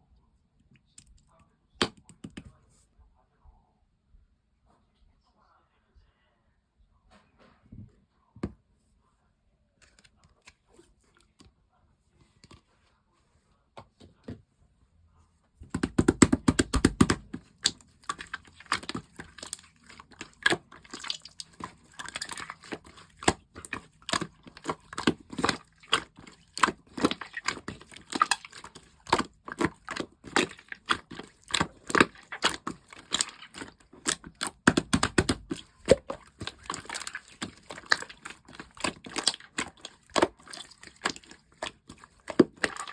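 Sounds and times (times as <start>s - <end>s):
slime squished by hand: 15.7s - 42.9s.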